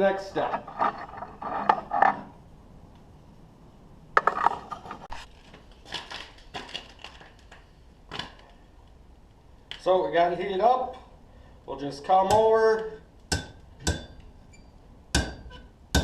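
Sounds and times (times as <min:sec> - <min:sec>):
metal clinks and scrapes: 0:00.4 - 0:02.3.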